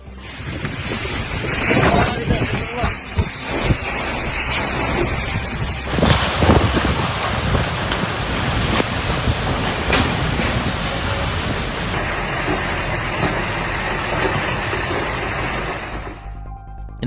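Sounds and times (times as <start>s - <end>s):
heavy rain: 0.0s - 16.3s.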